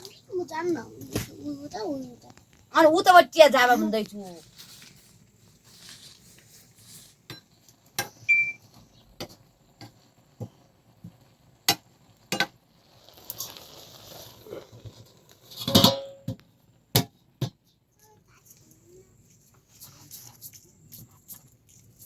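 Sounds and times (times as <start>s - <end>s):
soft hiss: 0.0s - 22.0s.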